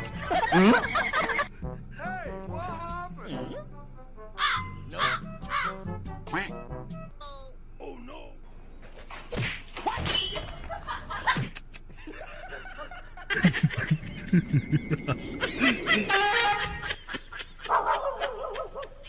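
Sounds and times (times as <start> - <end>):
person laughing: 0.1 - 1.5, 10.7 - 19.0.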